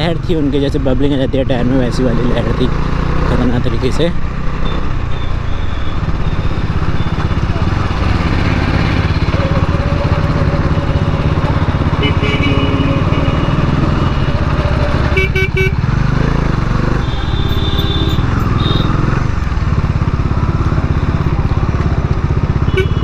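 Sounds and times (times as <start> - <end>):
motorcycle engine running: 0.0 - 23.0
vehicle horns: 4.6 - 21.5, 22.4 - 23.0.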